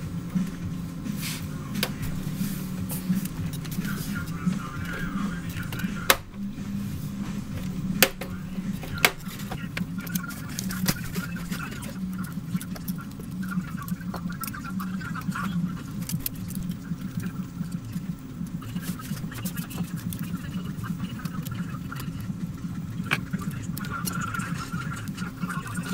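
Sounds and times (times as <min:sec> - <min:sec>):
steady low hum: 0:00.0 - 0:25.9
tools clicking and tapping: 0:07.6 - 0:12.0.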